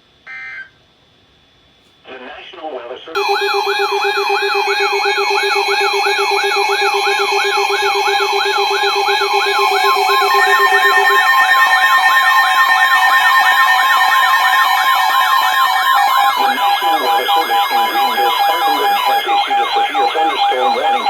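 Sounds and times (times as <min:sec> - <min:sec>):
low pulsing tone: 0:03.2 - 0:15.2
electronic siren sweeping: 0:03.2 - 0:21.0
steady alarm tones: 0:03.2 - 0:21.0.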